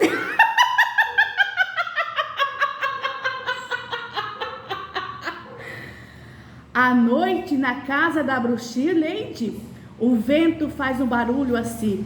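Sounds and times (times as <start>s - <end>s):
person cackling laugh: 0.0s - 5.7s.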